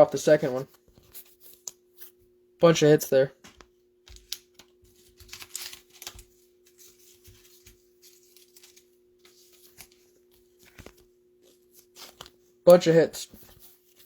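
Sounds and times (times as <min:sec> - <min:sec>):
trading cards rustling and clicking: 0:00.1 - 0:02.2, 0:03.4 - 0:14.0.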